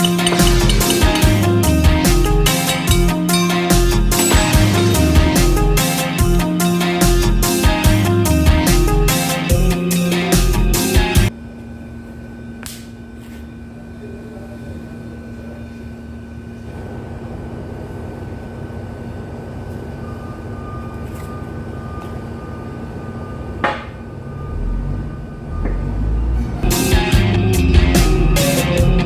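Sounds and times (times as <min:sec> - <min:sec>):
mechanical hum: 0:09.0 - 0:29.0.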